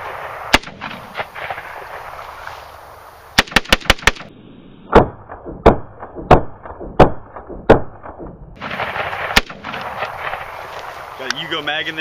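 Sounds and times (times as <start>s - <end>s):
pistol shots: 0.1s - 1.7s, 3.4s - 4.3s, 4.9s - 10.5s.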